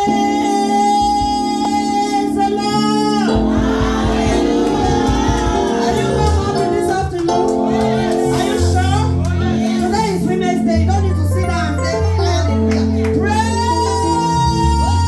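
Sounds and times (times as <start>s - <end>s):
music with singing: 0.0s - 15.0s.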